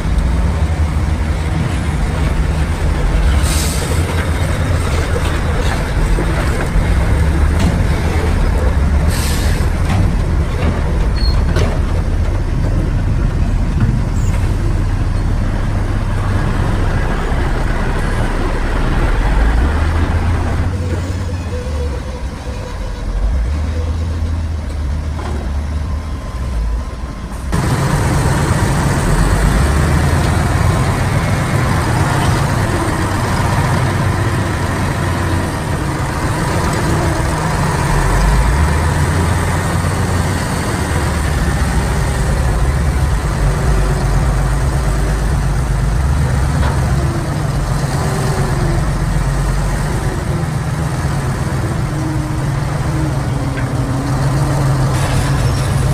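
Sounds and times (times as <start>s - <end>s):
bulldozer diesel engine running: 0.0s - 55.9s.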